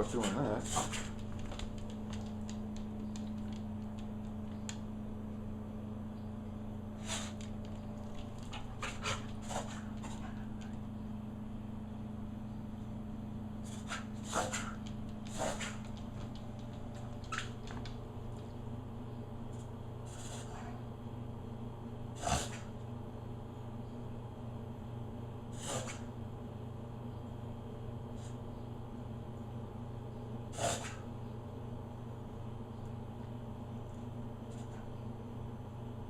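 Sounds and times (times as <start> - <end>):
steady low hum: 0.0 - 36.0
dog coughing: 22.2 - 22.7, 25.5 - 26.1, 30.5 - 31.0.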